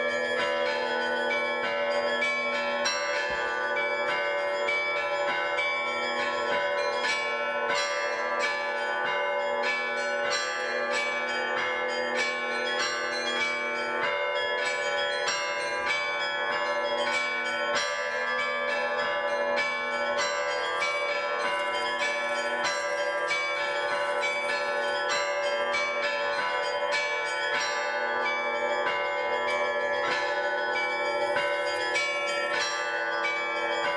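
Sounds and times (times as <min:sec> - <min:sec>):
bells ringing in rhythm: 0:00.0 - 0:33.9.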